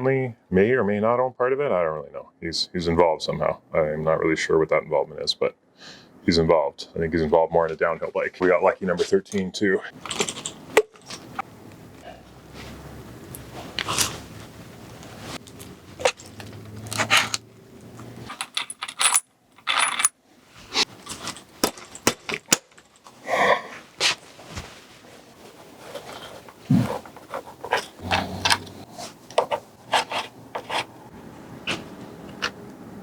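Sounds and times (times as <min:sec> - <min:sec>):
metal parts and tools clinking: 0:09.9 - 0:11.4, 0:15.4 - 0:20.2, 0:20.8 - 0:23.2.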